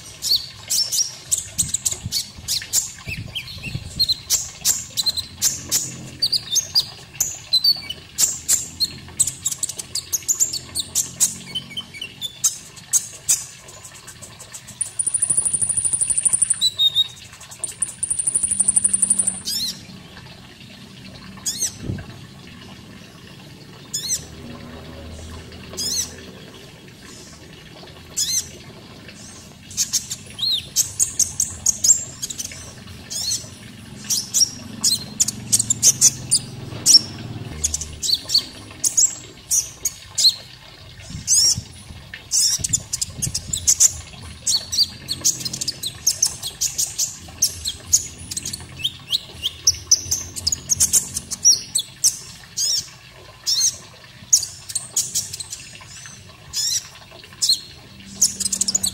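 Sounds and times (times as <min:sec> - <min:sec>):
running water: 0:00.0 - 0:58.9.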